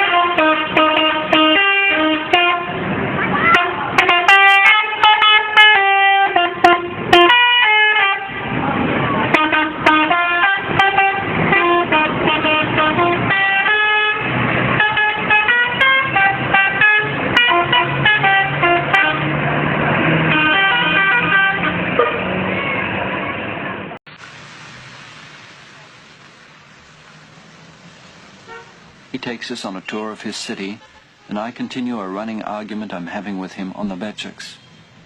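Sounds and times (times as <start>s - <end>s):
multi-tone bus horn melody: 0.0s - 23.5s, 28.4s - 28.9s.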